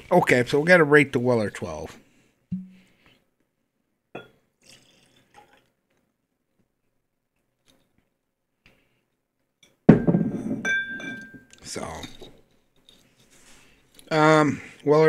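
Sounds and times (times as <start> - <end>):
drinking glass knocking on table: 9.9 - 11.4.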